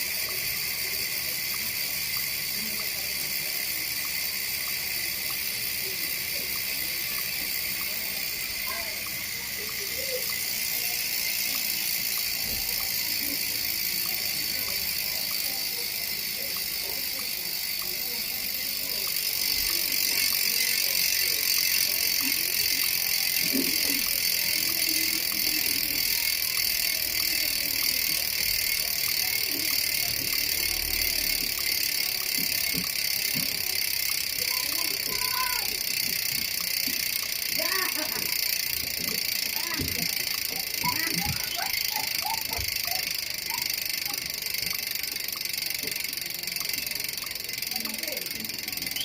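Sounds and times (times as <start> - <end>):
bicycle hub ratchet buzzing: 0.0 - 49.0.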